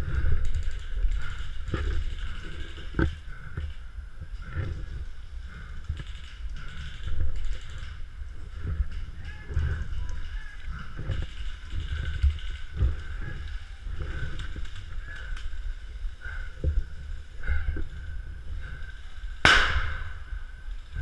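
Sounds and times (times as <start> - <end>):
rustling: 0.0 - 21.0
sharp loud crack ringing: 19.4 - 20.3.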